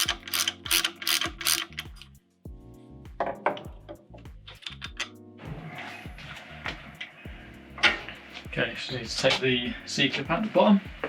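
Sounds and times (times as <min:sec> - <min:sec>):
ratchet wrench clicking: 0:00.0 - 0:02.2
music with a steady beat: 0:00.0 - 0:11.0.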